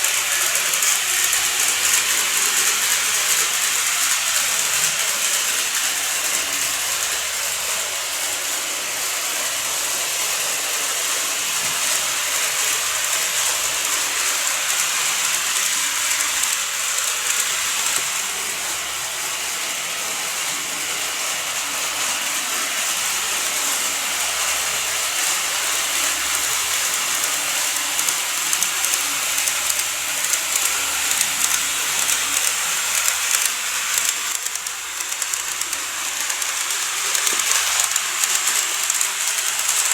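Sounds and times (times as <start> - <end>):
model train wheels and motor hiss: 0.0 - 39.9
clicking over rail joints: 11.4 - 18.5, 25.3 - 39.9.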